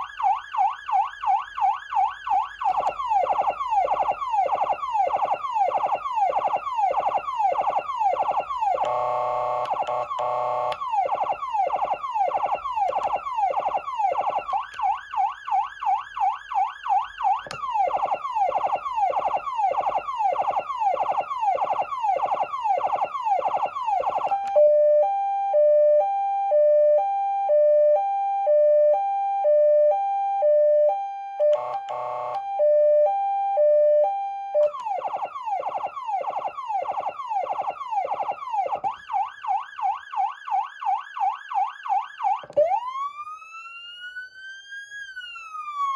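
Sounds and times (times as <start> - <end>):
electronic siren sweeping: 0.0 - 45.9
harsh horn blast: 31.6 - 32.4.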